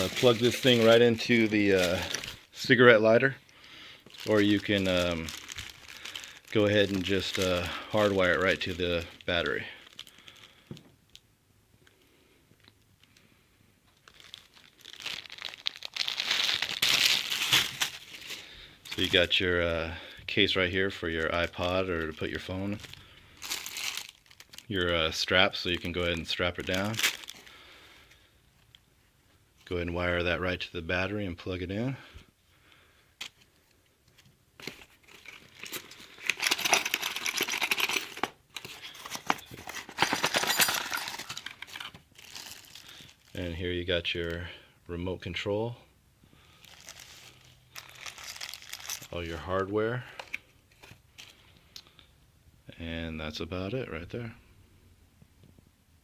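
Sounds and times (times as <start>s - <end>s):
packaging crinkling and rustling: 0.0s - 11.2s, 13.9s - 19.5s, 20.4s - 27.6s, 33.2s - 43.6s, 46.4s - 51.5s.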